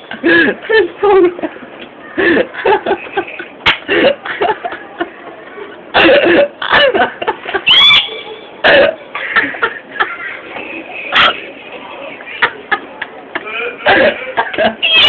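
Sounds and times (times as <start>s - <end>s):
man making silly cough noises: 13.8s - 14.6s.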